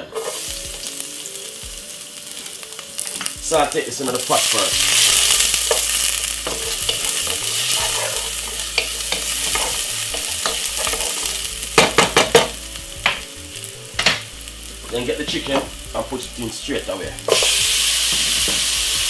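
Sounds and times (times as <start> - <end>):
garlic and onion sizzling: 0.0 - 19.0
sharp knocks: 14.0 - 14.3.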